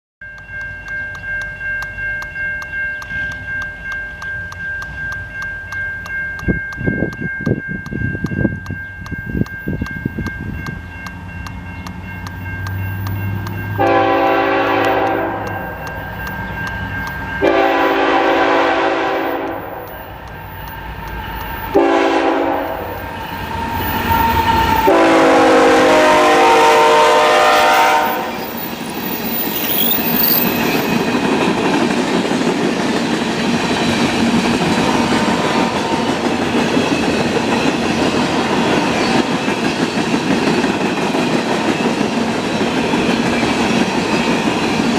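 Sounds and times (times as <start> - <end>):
locomotive horn blasts: 13.7 - 15.8, 17.4 - 19.9, 21.7 - 23.1, 23.7 - 28.6
freight train wheels clattering: 28.0 - 44.9.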